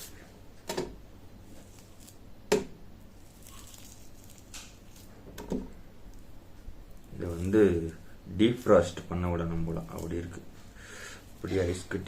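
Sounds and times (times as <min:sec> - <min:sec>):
frozen meat knocking: 0:02.5 - 0:05.8.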